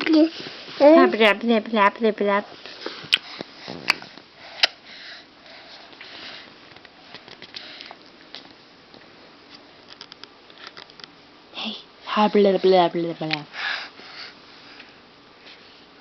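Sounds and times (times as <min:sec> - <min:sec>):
breathy sniffing and snuffling: 0:02.6 - 0:06.6, 0:13.5 - 0:14.9.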